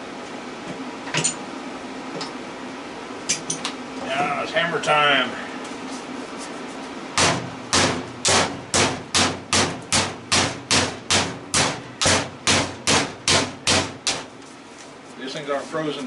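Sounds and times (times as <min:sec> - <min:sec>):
hammer striking metal motor: 0:07.2 - 0:14.3.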